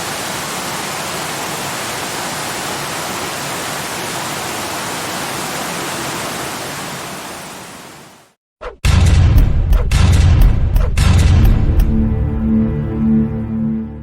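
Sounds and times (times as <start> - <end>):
waterfall rushing: 0.0 - 8.4.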